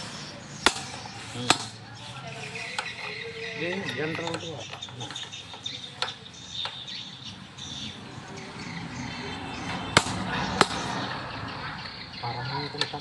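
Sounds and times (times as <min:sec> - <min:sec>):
steady background noise: 0:00.0 - 0:13.0.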